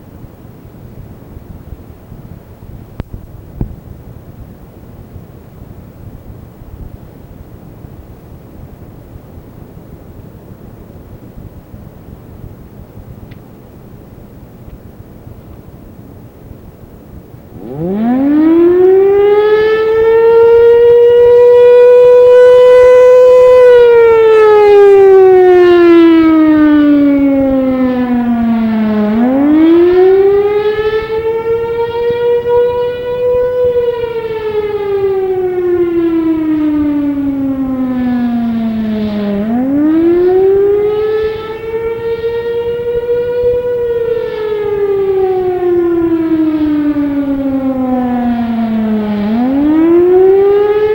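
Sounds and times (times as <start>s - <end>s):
civil defense siren wailing: 0.0s - 50.9s.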